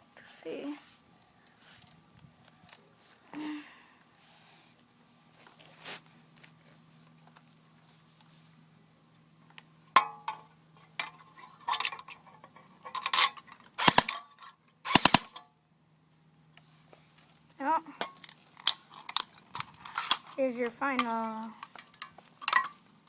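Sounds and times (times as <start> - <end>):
airsoft gun shots: 13.8 - 14.2, 14.8 - 15.4.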